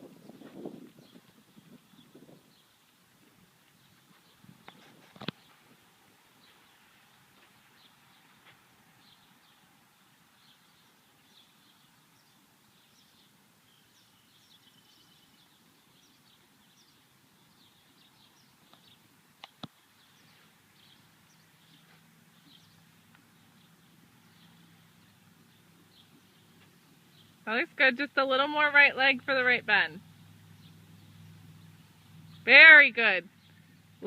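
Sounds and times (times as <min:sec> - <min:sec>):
faint bird chirps: 0:10.4 - 0:19.0
sharp clicks: 0:19.4 - 0:19.8.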